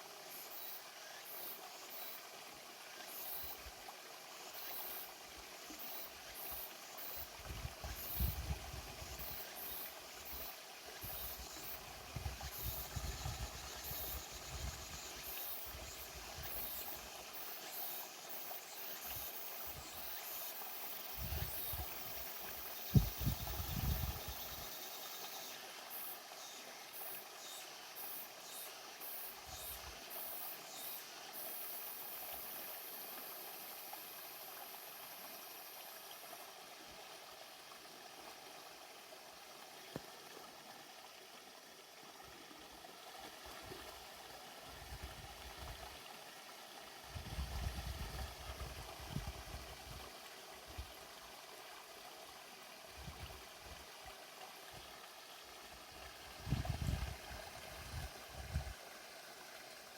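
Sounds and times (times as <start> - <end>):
trickle of running water: 0.0 - 59.9
wind gusts on microphone: 7.4 - 9.2, 22.9 - 24.4, 47.1 - 50.0, 56.4 - 58.7.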